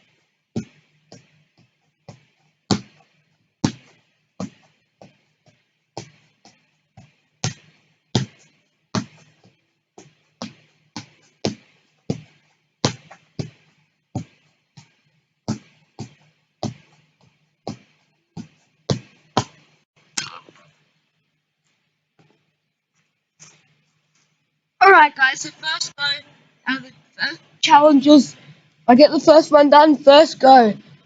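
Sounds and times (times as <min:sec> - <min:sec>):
ball being kicked thuds: 0:02.1 - 0:03.0, 0:03.6 - 0:05.2, 0:06.0 - 0:09.4, 0:10.4 - 0:17.0, 0:17.7 - 0:19.7.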